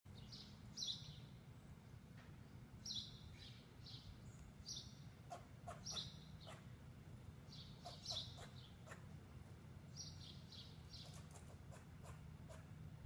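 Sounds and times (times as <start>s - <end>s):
squirrel alarm calls: 2.9s - 6.8s, 7.5s - 9.2s, 9.9s - 12.8s.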